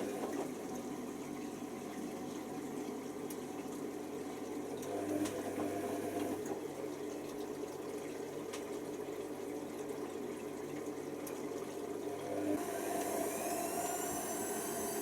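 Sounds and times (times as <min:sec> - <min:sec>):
washer dryer humming: 0:00.0 - 0:00.9, 0:11.8 - 0:15.0
water moving inside machine: 0:00.0 - 0:15.0.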